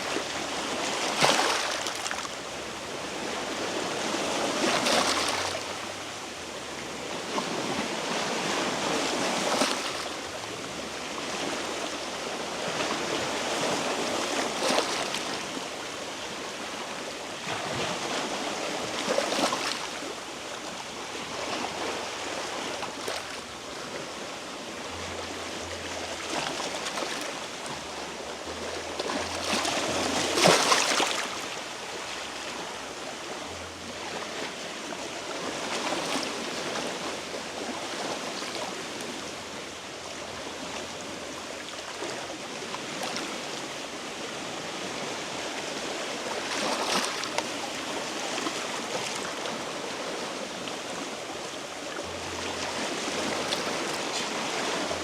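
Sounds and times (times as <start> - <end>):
sea waves washing against rocks: 7.1 - 33.4, 40.6 - 55.0.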